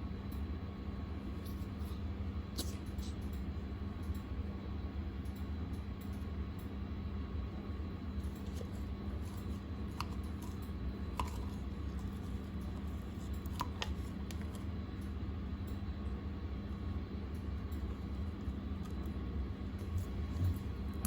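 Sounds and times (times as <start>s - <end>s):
low background hum: 0.0s - 21.0s
slime squishing: 8.2s - 14.7s, 17.8s - 21.0s.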